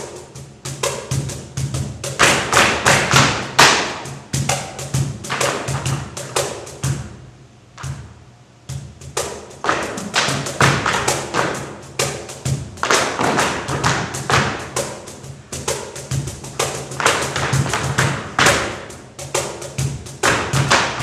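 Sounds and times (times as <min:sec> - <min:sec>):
tap shoes striking stage floor: 0:02.2 - 0:07.0, 0:07.8 - 0:08.1, 0:09.6 - 0:15.1, 0:15.9 - 0:21.0.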